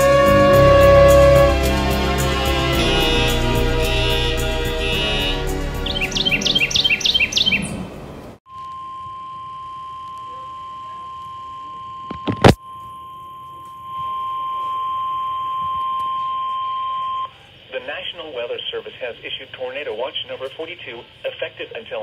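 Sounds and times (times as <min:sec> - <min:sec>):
steady warning alarm tone: 0:00.0 - 0:06.4, 0:08.8 - 0:17.4
high chirps: 0:02.8 - 0:07.8.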